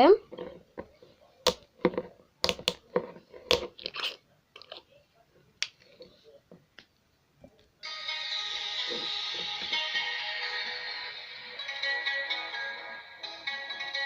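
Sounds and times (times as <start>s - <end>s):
bottle and cardboard packaging clicking: 1.5s - 4.0s.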